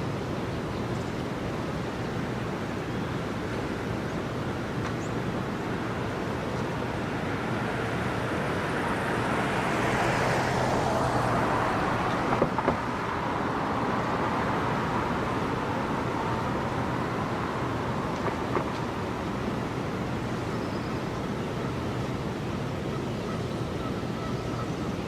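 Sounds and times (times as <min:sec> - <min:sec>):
vehicle tyre noise passing: 0:05.7 - 0:22.8.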